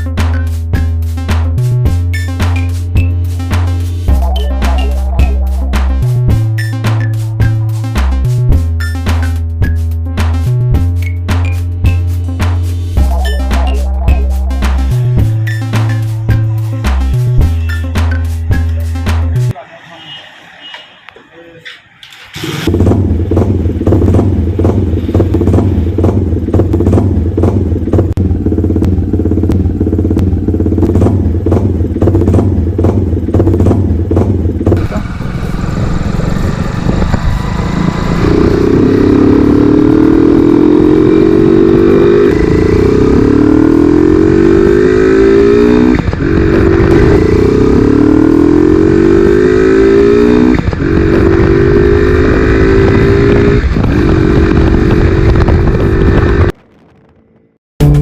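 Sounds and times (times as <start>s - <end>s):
motorcycle engine revving: 22.2s - 58.0s.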